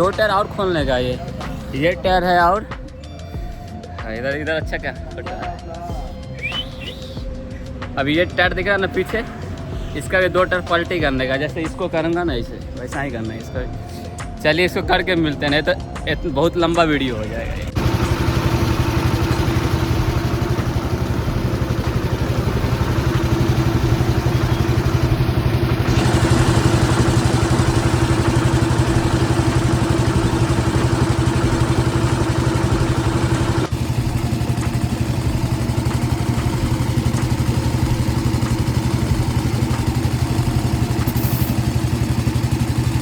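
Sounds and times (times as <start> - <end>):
engine idling: 17.0 - 43.0.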